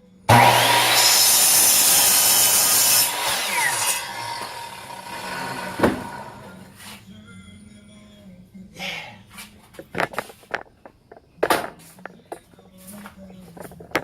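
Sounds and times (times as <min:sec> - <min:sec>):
power saw cutting wood: 0:00.3 - 0:06.7.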